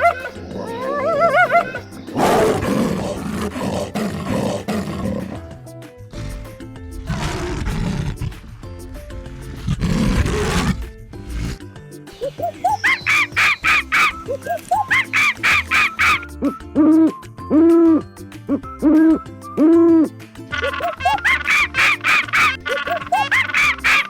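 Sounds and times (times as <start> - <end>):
big cat roaring: 0.0 - 5.5, 6.1 - 11.6
light background music: 0.0 - 24.0.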